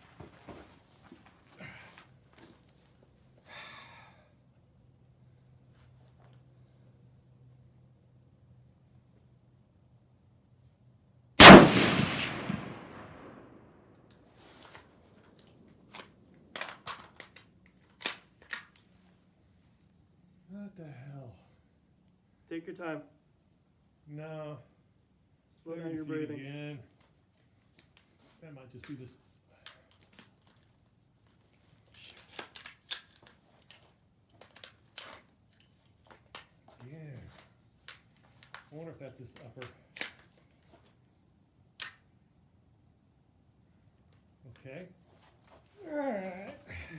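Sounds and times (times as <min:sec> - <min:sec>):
rifle action clicks: 0:11.4 - 0:13.4, 0:15.4 - 0:18.9, 0:32.0 - 0:33.8, 0:41.8 - 0:42.0
rifle shot with echo: 0:11.4 - 0:13.6.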